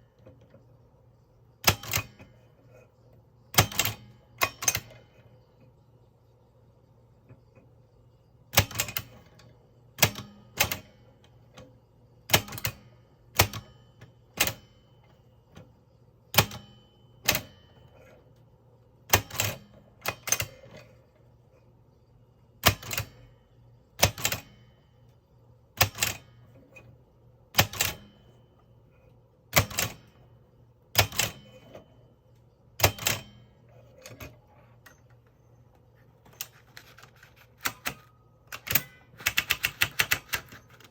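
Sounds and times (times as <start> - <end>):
typewriter strikes: 1.6 - 2.3, 3.5 - 5.0, 8.5 - 9.3, 10.0 - 11.0, 12.3 - 14.8, 16.3 - 17.7, 19.1 - 20.8, 22.6 - 23.2, 24.0 - 24.7, 25.8 - 26.3, 27.6 - 28.3, 29.5 - 30.2, 30.9 - 31.8, 32.8 - 34.3, 36.4 - 40.9.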